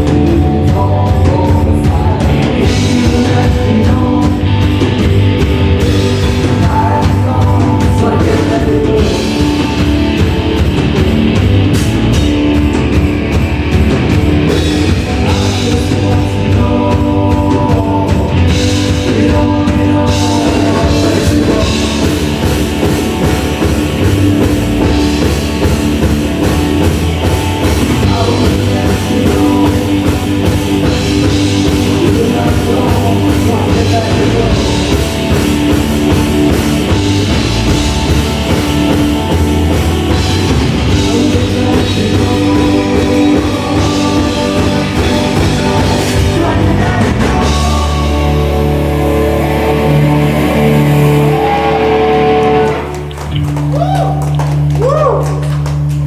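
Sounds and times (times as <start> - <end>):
rock band playing live: 0.0 - 56.0.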